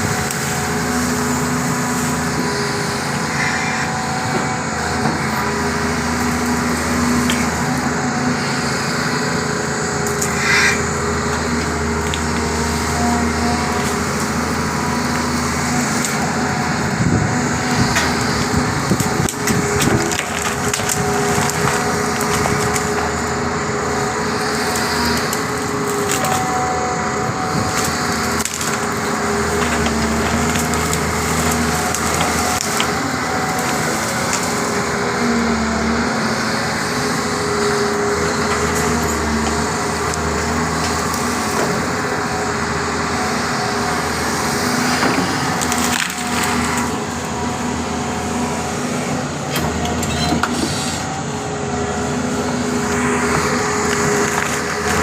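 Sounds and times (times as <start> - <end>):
excavator diesel engine running: 0.0 - 55.0
wood cracking and splintering: 4.2 - 8.1, 10.0 - 35.3, 37.3 - 42.1, 43.9 - 47.3, 52.7 - 55.0.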